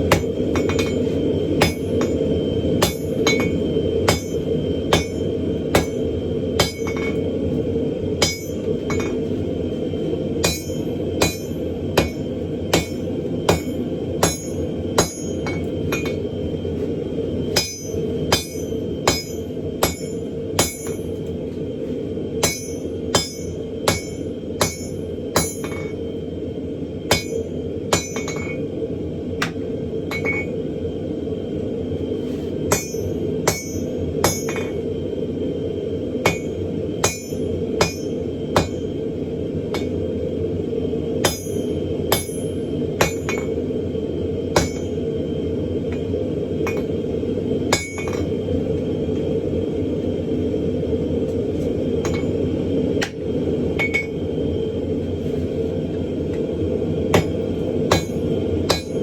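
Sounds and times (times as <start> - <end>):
hammer striking hot steel: 0.0 - 7.3, 8.1 - 9.4, 10.4 - 16.3, 17.5 - 21.3, 22.3 - 26.1, 27.0 - 28.7, 29.3 - 30.6, 32.6 - 34.9, 36.2 - 39.0, 39.7 - 40.0, 41.2 - 43.6, 44.5 - 45.0, 45.9 - 47.0, 47.7 - 48.4, 51.3 - 52.4, 53.0 - 54.2, 57.1 - 59.0.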